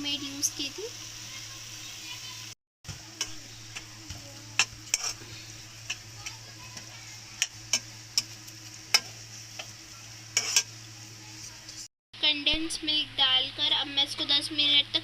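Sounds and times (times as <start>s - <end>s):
faint sizzle: 0.0s - 15.0s
spoon scraping a pan: 3.2s - 10.8s.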